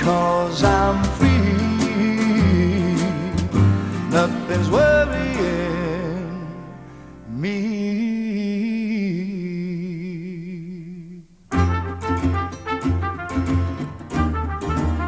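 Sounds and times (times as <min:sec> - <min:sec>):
soft rock pop song: 0:00.0 - 0:09.7.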